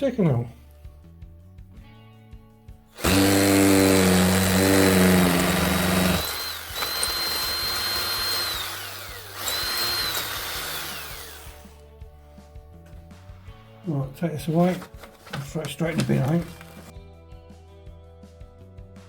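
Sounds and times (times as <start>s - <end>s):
drill motor spinning down: 3.0s - 11.8s
power drill drilling into brick: 3.0s - 11.8s, 16.2s - 16.9s.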